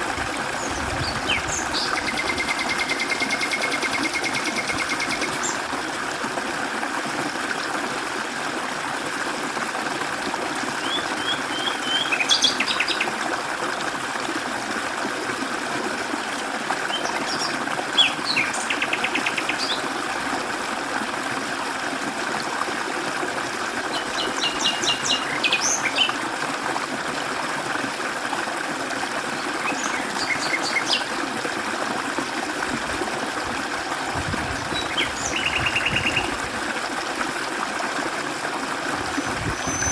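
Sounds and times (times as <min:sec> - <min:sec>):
stream rushing over rocks: 0:00.0 - 0:39.9
songbirds chirping and trilling: 0:34.7 - 0:36.3.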